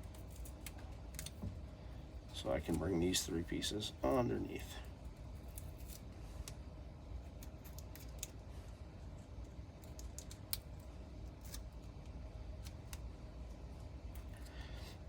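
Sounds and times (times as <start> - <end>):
grip tape clicks and crinkles: 0.0 - 1.5, 5.0 - 6.6, 7.2 - 8.5, 9.1 - 14.6.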